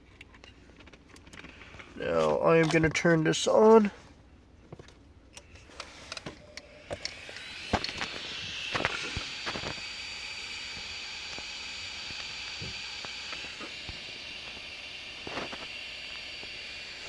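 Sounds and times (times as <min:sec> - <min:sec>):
cooling fans whining: 0:00.0 - 0:17.0.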